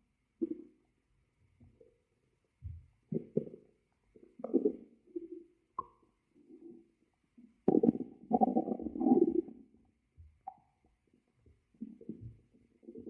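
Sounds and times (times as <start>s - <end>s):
stomach growling and gurgling: 3.1s - 10.8s, 11.5s - 13.0s.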